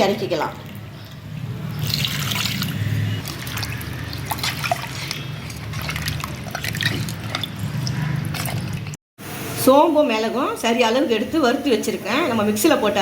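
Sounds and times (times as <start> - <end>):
water pouring and dripping: 0.6 - 9.0.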